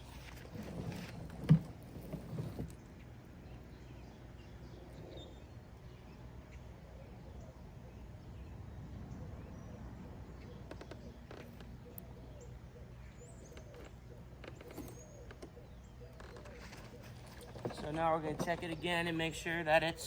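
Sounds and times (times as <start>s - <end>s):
bird calls: 9.1s - 20.0s
light clicks and knocks: 16.2s - 19.0s.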